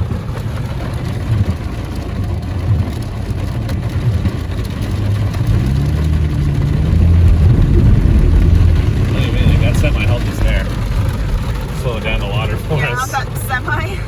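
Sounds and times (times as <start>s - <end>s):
engine and tyre rumble: 0.0s - 14.0s.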